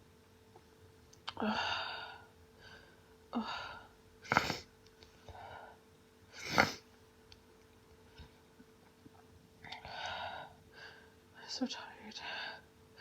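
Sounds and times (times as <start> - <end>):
woman sneezing: 4.3 - 4.7.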